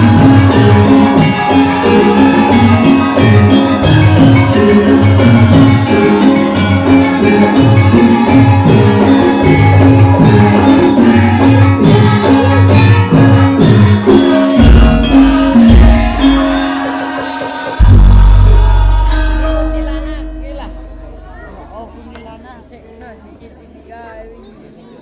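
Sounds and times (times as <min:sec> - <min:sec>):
pitched percussion and drums: 0:00.0 - 0:24.7
deep booming hits: 0:17.8 - 0:21.8.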